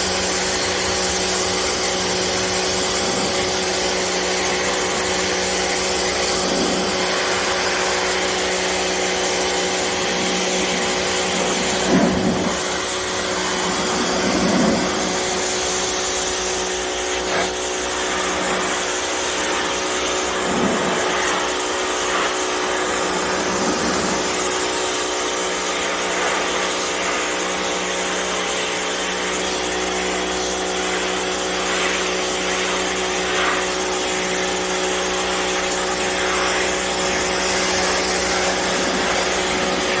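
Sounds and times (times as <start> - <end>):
motor hum: 0.0 - 25.0, 35.2 - 40.0
pressure washer water jet hiss: 0.0 - 40.0.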